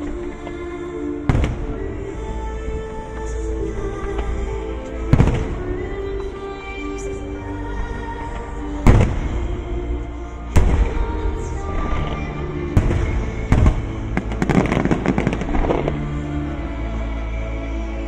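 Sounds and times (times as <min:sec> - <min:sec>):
fireworks crackling: 0:00.0 - 0:07.3, 0:08.2 - 0:16.6
music playing: 0:00.0 - 0:18.0
fireworks bangs: 0:11.8 - 0:16.0.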